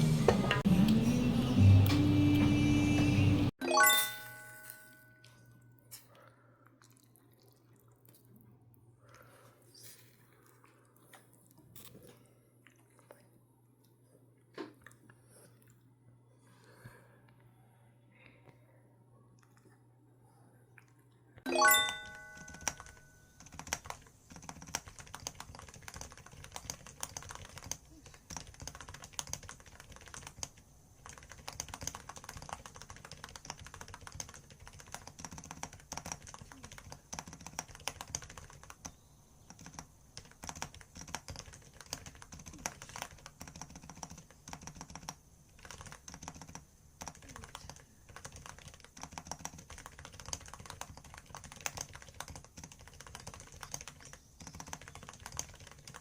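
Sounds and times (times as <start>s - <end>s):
typing on computer keyboard: 22.1s - 56.0s.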